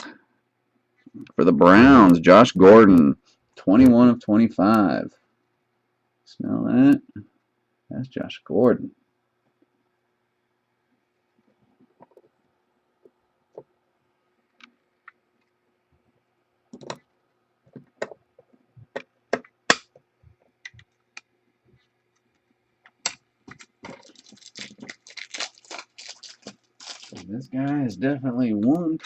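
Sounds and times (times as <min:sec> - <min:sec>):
plastic rustling and crackling: 0:23.4 - 0:27.9.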